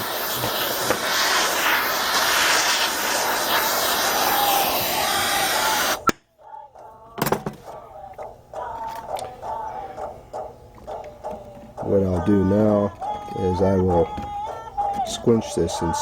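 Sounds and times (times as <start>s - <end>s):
torch flame hissing: 0.0s - 6.1s.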